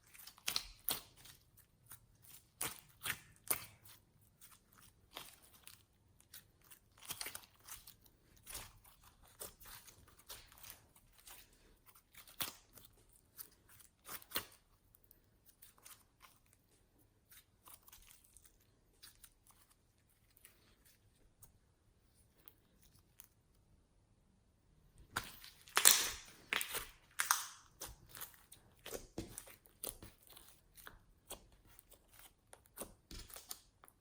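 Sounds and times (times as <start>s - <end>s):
sticky clicks and crackles: 25.1s - 34.0s.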